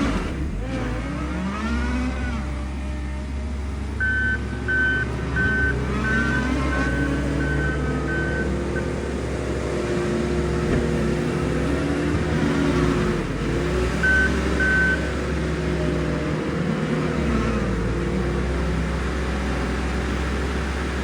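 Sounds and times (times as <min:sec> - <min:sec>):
diesel engine running: 0:00.0 - 0:21.0
reverse alarm beeps: 0:04.0 - 0:08.9, 0:14.0 - 0:15.1.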